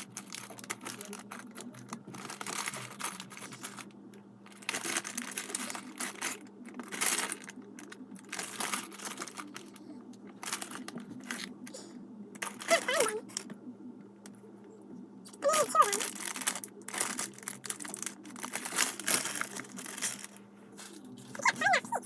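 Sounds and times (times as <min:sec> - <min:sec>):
plastic bricks clicking and rattling: 0:00.0 - 0:03.9, 0:04.5 - 0:11.6, 0:15.4 - 0:21.8
faint steady hum: 0:00.0 - 0:22.0.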